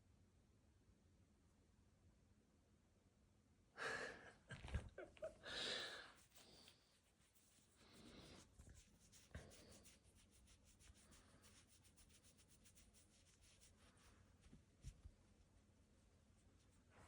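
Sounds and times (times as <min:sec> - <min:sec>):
scratchy rubbing crackle: 0:06.1 - 0:15.0.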